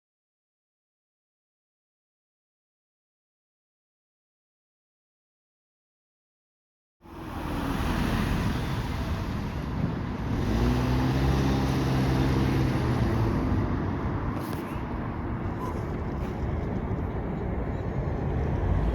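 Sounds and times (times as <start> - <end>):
road traffic noise: 7.0 - 18.9.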